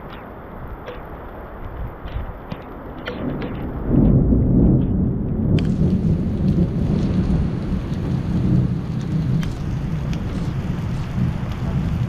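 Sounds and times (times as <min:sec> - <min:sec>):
heavy rain pouring: 0:00.0 - 0:12.0
raindrops ticking close by: 0:00.0 - 0:12.0
low rumble: 0:03.1 - 0:12.0.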